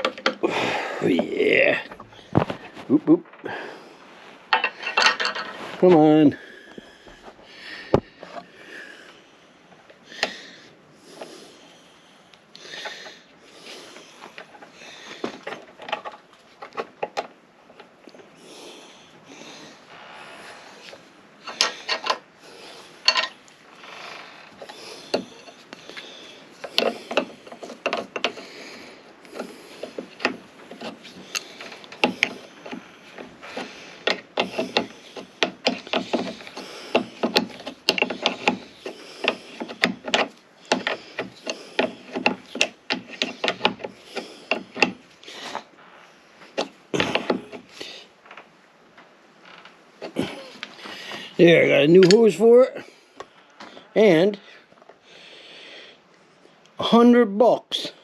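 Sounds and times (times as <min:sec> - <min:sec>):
hand tools clicking and knocking: 0:00.0 - 0:03.6, 0:04.5 - 0:06.2, 0:14.3 - 0:17.9, 0:21.4 - 0:23.4, 0:24.4 - 0:45.8, 0:46.4 - 0:48.4, 0:50.0 - 0:52.3.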